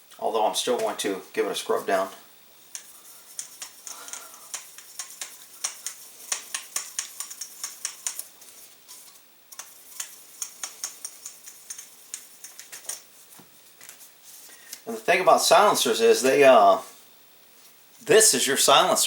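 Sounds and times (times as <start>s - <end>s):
brush scrubbing inside a tube: 1.0s - 2.1s, 2.8s - 14.5s.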